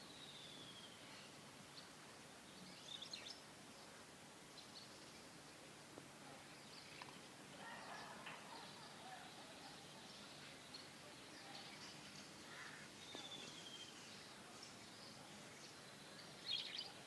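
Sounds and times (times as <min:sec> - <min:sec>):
bird chirps: 0:13.0 - 0:14.2.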